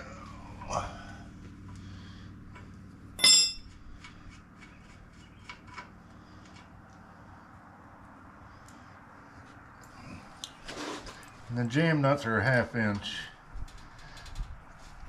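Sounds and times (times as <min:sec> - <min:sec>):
loud ringing metallic clank: 0:03.2 - 0:03.7
metal hand tools clinking: 0:03.2 - 0:03.7.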